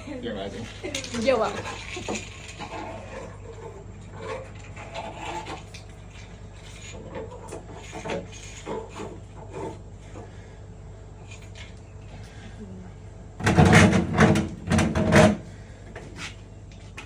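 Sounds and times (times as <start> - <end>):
steady low hum: 0.0 - 17.0
hard objects scraping and knocking: 0.6 - 10.4, 13.4 - 17.0.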